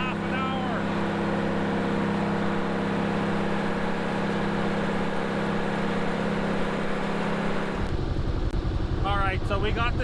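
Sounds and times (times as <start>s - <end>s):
diesel engine running: 0.0s - 10.0s.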